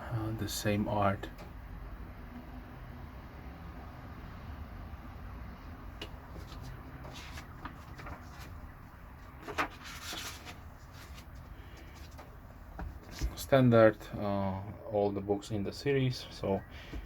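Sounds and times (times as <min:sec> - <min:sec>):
paper and card rustling: 0:06.0 - 0:12.3.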